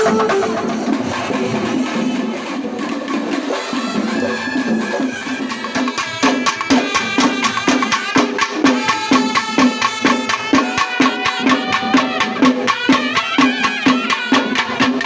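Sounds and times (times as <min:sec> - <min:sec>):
sustained melody line: 0:00.0 - 0:01.4
drums keeping a steady beat: 0:00.0 - 0:15.0.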